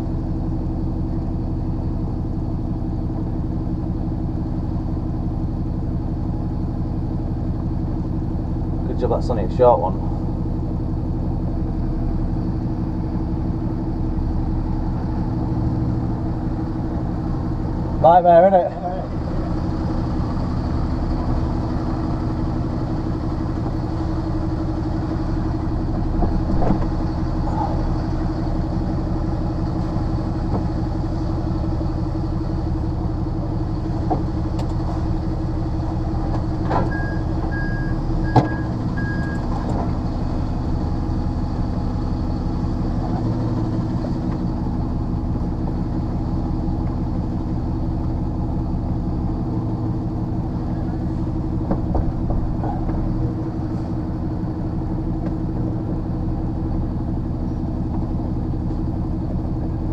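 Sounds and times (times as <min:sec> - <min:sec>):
lorry diesel engine running: 0:00.0 - 0:59.9
reversing alarm beeps: 0:36.9 - 0:39.4.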